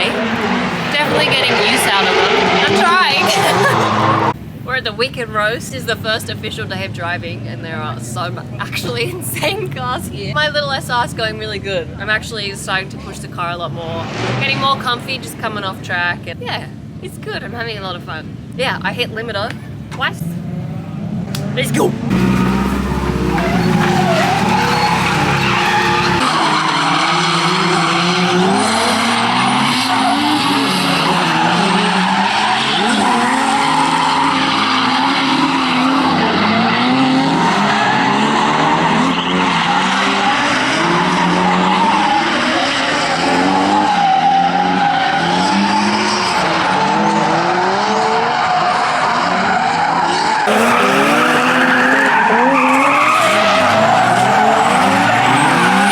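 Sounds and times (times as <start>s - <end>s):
car engine revving: 0.0s - 4.6s, 12.7s - 16.8s, 20.0s - 55.9s
tyres screeching: 21.3s - 46.3s, 48.2s - 55.9s.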